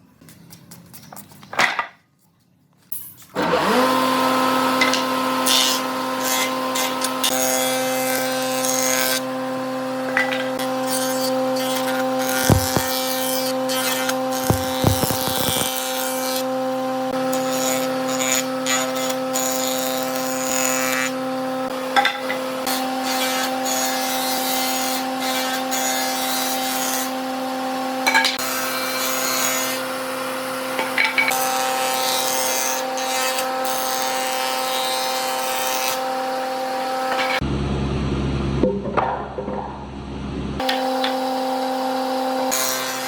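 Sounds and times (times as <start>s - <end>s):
power tool motor hum: 3.4s - 7.5s, 10.0s - 17.6s
abrasive scraping on wood: 12.3s - 13.2s, 13.9s - 15.7s
short knocks: 12.5s - 13.0s.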